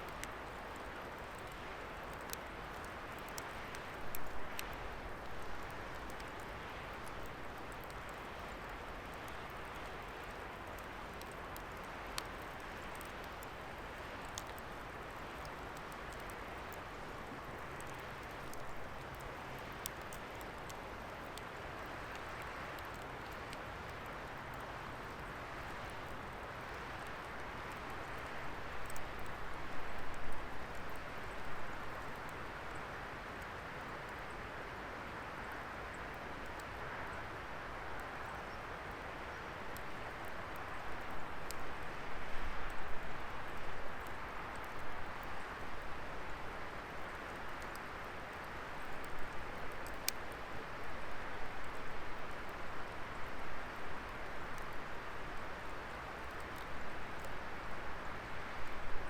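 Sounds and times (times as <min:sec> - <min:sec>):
wood fire burning: 0:00.0 - 0:34.3, 0:39.6 - 0:52.1, 0:52.7 - 0:59.0
fire popping and crackling: 0:00.1 - 0:32.4.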